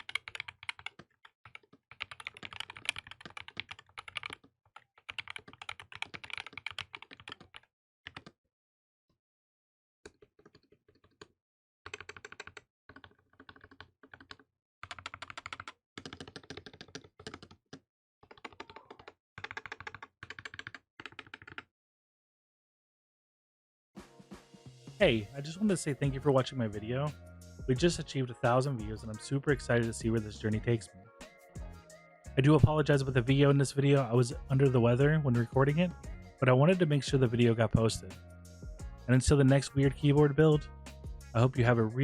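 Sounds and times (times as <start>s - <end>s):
mechanical keyboard typing: 0.0s - 8.4s, 11.9s - 21.7s.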